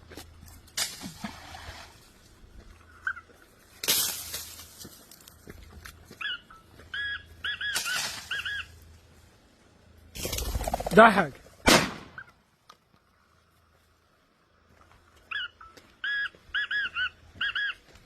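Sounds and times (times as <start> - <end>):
francolin calling: 6.2 - 8.8, 15.2 - 17.9.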